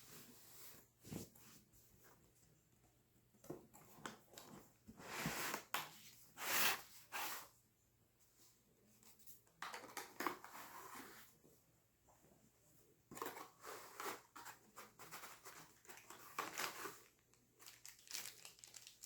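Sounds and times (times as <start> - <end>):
packaging rustling and scraping: 13.1 - 19.0.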